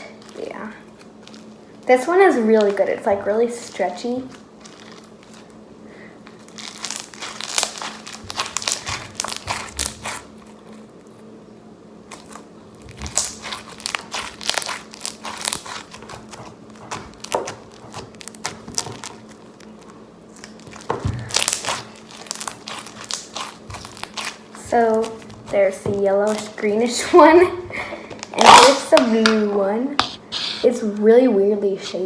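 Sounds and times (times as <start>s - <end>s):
slime beads crunching and popping: 6.4s - 10.3s, 12.1s - 26.7s, 28.2s - 29.3s.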